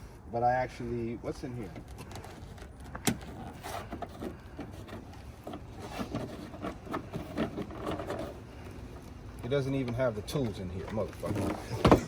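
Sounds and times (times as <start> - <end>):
items knocking and rubbing: 1.7 - 9.1, 10.9 - 12.0.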